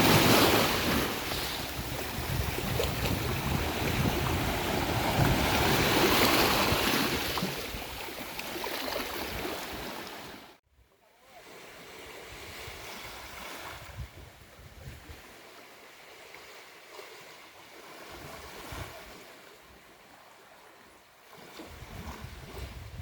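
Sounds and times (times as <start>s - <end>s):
wind rumble on microphone: 0.0s - 8.0s, 12.1s - 15.4s, 21.4s - 23.0s
ocean waves on a beach: 0.0s - 23.0s.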